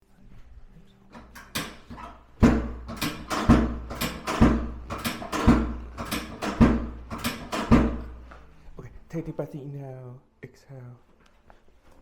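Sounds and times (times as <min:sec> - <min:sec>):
hard deep thumps: 0:02.4 - 0:08.3.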